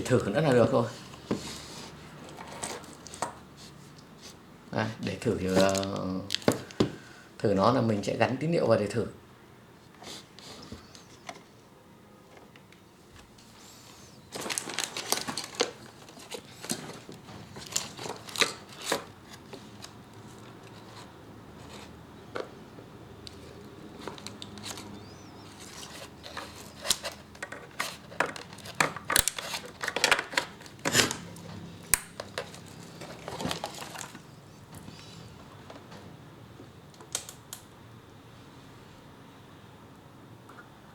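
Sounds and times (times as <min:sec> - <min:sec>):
cables and connectors clicking: 0:36.9 - 0:37.8.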